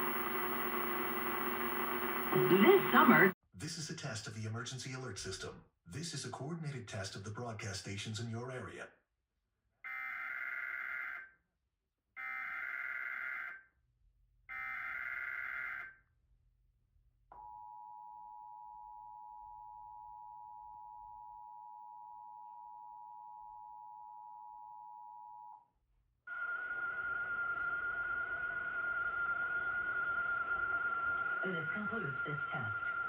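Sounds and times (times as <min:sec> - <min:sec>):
data bursts: 0:00.0 - 0:03.4
two-tone attention signal: 0:00.0 - 0:03.4.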